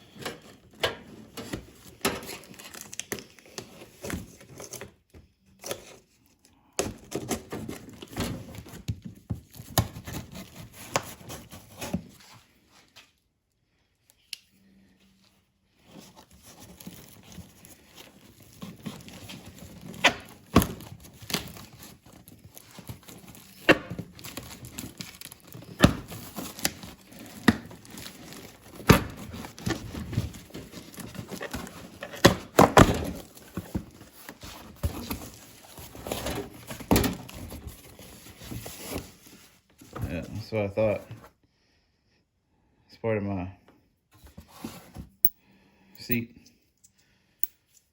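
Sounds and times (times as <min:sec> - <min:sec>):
packaging rustling and crinkling: 0:00.1 - 0:06.2, 0:15.8 - 0:40.2.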